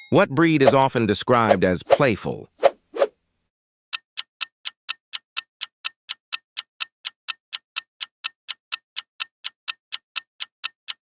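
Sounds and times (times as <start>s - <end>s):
clock ticking: 3.9s - 11.0s.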